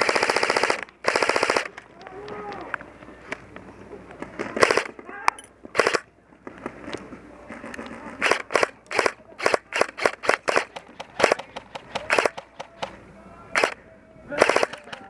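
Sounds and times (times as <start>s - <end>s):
airsoft gun shots: 8.2s - 13.0s, 14.4s - 15.0s.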